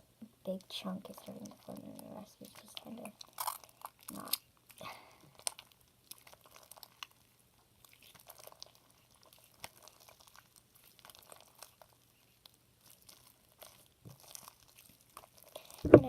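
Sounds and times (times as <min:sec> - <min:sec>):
sticky slime clicks and crackles: 0:07.9 - 0:16.0.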